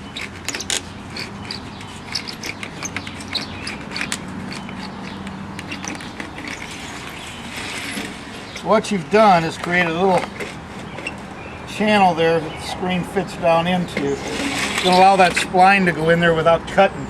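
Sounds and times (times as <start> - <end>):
screen roller clicking and scraping: 0.0 - 8.6, 14.0 - 15.5.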